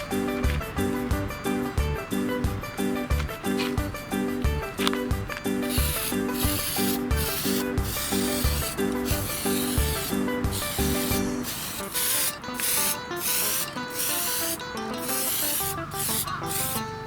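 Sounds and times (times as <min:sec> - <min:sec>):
background music with steady beat: 0:00.0 - 0:17.0
hand sanding strokes: 0:05.5 - 0:16.9.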